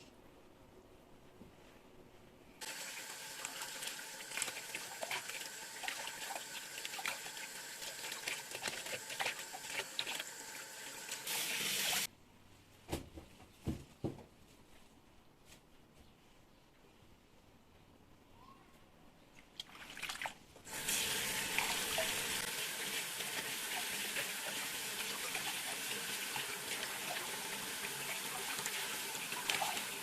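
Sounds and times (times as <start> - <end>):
tap water running into sink: 2.6 - 12.1, 20.7 - 30.0.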